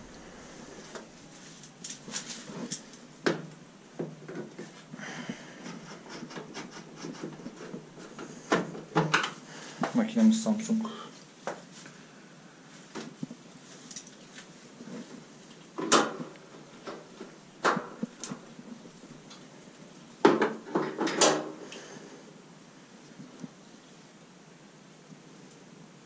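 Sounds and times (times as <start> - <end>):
hard objects knocking and clattering: 20.2 - 21.4.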